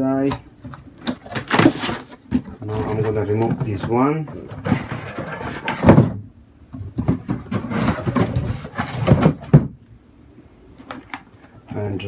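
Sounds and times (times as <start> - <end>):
equipment handling rustling and knocking: 0.2 - 6.2, 6.8 - 9.8.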